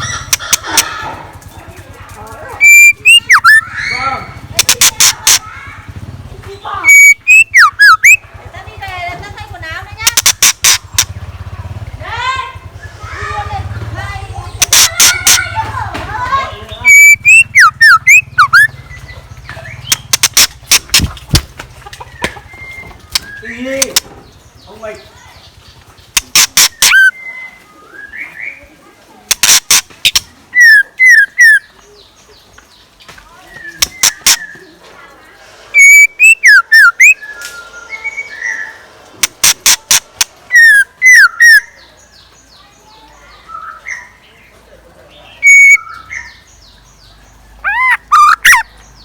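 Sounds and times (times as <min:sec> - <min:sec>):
bird whistling swooping notes: 0:02.6 - 0:04.0, 0:06.8 - 0:08.2, 0:16.8 - 0:19.1, 0:30.1 - 0:31.7, 0:35.7 - 0:41.8
songbird whistling: 0:02.6 - 0:05.5, 0:06.6 - 0:08.3, 0:14.5 - 0:15.6, 0:16.7 - 0:21.1, 0:22.1 - 0:24.0, 0:26.2 - 0:28.7, 0:29.4 - 0:32.0, 0:33.5 - 0:34.7, 0:35.7 - 0:41.9, 0:45.4 - 0:49.0
sharp clicks: 0:04.6 - 0:05.4, 0:06.9 - 0:08.2, 0:10.0 - 0:11.2, 0:14.6 - 0:16.0, 0:16.7 - 0:24.2, 0:25.9 - 0:27.1, 0:29.3 - 0:31.6, 0:33.6 - 0:34.6, 0:39.0 - 0:41.6.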